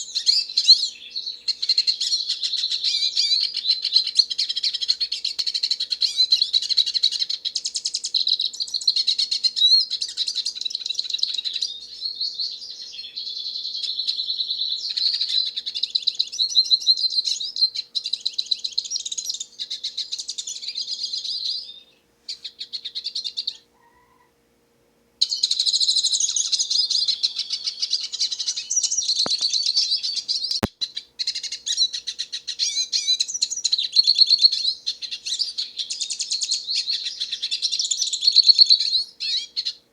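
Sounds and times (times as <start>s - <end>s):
bird twittering song: 0.0s - 24.2s, 25.2s - 39.9s
sharp clicks: 29.2s - 29.6s, 30.4s - 30.8s.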